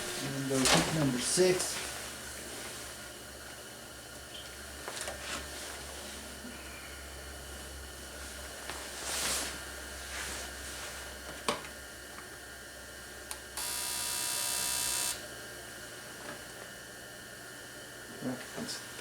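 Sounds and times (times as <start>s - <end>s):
fuel injector electric buzz: 0.0s - 0.7s, 13.3s - 15.3s.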